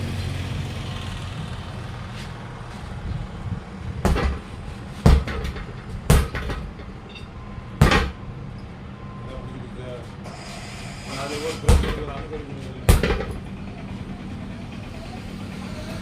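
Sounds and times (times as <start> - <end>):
hammer blows on truck tyre: 3.9 - 7.0, 10.3 - 13.5.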